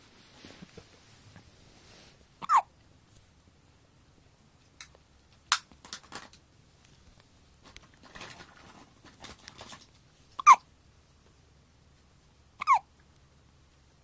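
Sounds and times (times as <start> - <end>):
soft rustling: 0.0 - 2.4, 3.0 - 3.5
person hiccuping: 2.4 - 2.7, 12.6 - 12.9.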